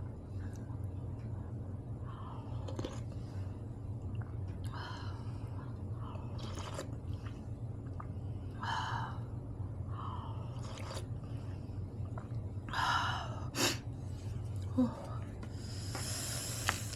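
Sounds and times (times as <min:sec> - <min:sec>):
steady low hum: 0:00.0 - 0:16.9
person chewing food: 0:02.5 - 0:03.2, 0:06.4 - 0:08.1, 0:10.5 - 0:11.2
wet mouth noises: 0:06.4 - 0:08.1, 0:10.6 - 0:11.2.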